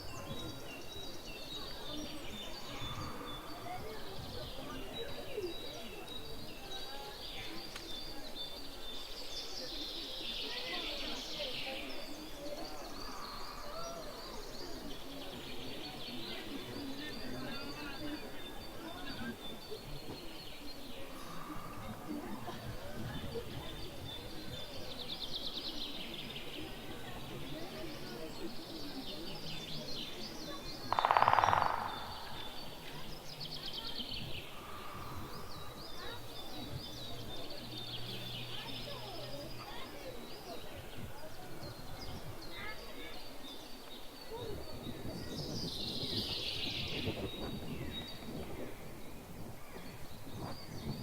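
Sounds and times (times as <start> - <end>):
birds singing and chirping: 0.0 - 51.0
outdoor background noise: 0.0 - 51.0
bird chirps: 30.5 - 39.2
bird fast trill: 30.9 - 32.9.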